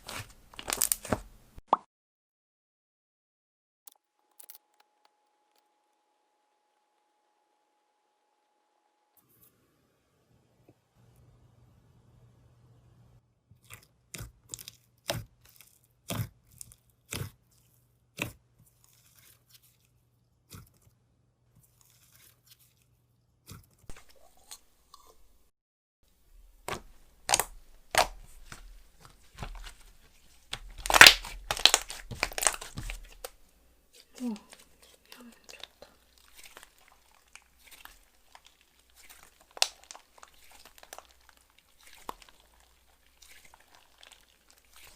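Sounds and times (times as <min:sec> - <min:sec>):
slime clicking and popping: 0:26.6 - 0:28.6, 0:30.5 - 0:33.3, 0:36.4 - 0:42.6.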